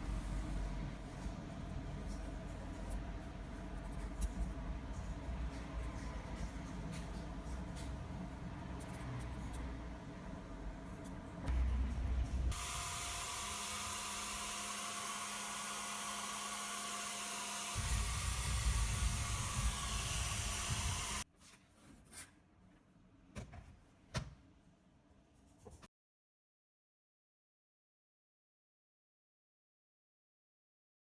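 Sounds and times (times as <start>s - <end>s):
low air buffeting: 0.0s - 12.8s, 17.8s - 21.2s
hair dryer running: 11.5s - 21.2s.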